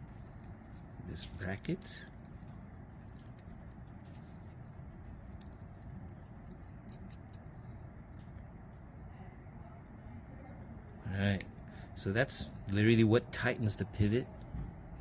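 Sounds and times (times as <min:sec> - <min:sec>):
low hum: 0:00.0 - 0:12.8
small metal parts clicking: 0:00.2 - 0:07.7.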